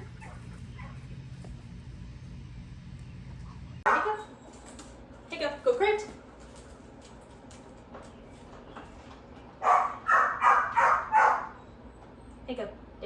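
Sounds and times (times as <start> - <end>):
dog barking: 3.9 - 4.2, 9.6 - 11.6.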